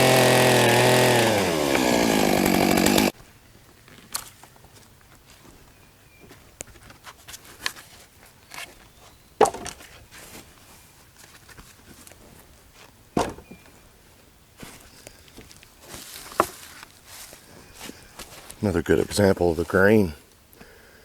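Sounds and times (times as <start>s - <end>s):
handling noises: 3.8s - 20.0s
sharp knocks: 13.2s - 13.6s
footsteps: 14.6s - 19.8s.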